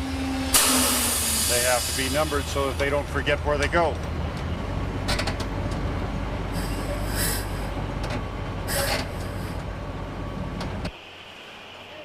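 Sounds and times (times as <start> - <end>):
crane engine rumbling: 0.0 - 12.0
high-pitched hiss or squeal: 0.6 - 2.8, 6.6 - 7.7, 8.7 - 9.6.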